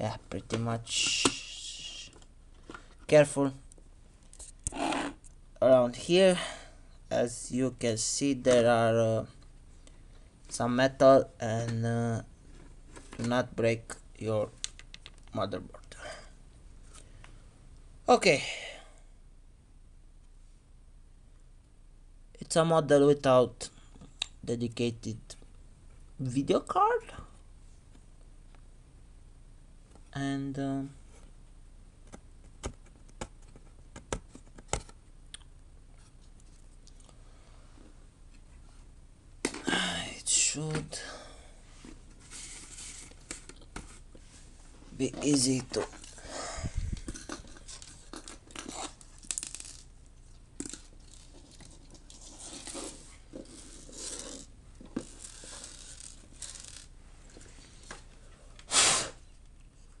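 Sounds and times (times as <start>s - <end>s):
laptop parts scraping and rustling: 41.8s - 46.2s, 46.9s - 49.8s, 50.6s - 58.0s
short loud puff: 58.7s - 59.2s.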